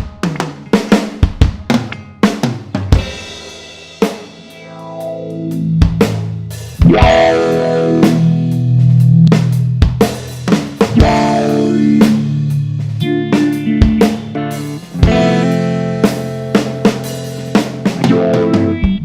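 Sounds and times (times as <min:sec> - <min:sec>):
drum hits: 0:00.0 - 0:04.3, 0:05.8 - 0:08.4, 0:09.4 - 0:19.0
electric guitar with wah filter: 0:00.0 - 0:19.0.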